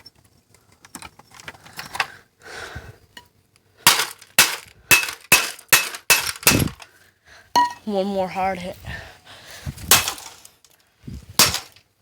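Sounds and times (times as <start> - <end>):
hard blows smashing plastic: 3.9 - 6.8, 9.8 - 10.6, 11.4 - 11.8
loose broken pieces rattling: 3.9 - 6.9, 9.9 - 10.8.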